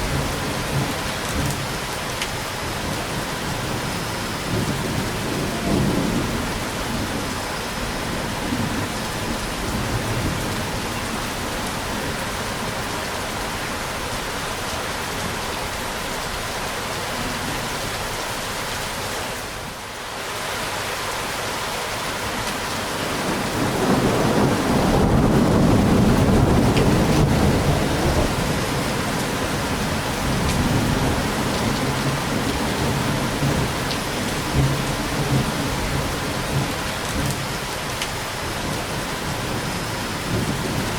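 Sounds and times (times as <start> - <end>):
steady rain: 0.0 - 40.9
low rumble of thunder: 2.7 - 12.3, 23.0 - 37.7.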